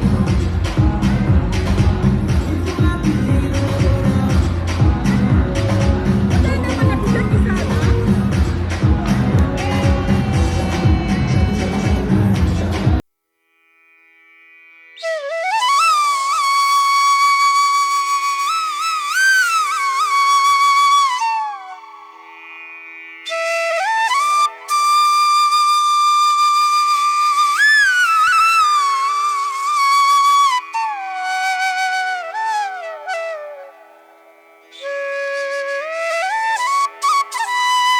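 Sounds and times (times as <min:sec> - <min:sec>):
high melody with slides and bends: 0:00.0 - 0:13.0.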